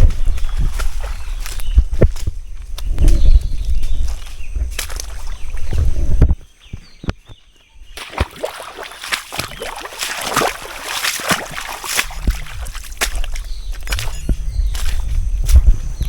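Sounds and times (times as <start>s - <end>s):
water splashing from wading: 8.0s - 14.2s.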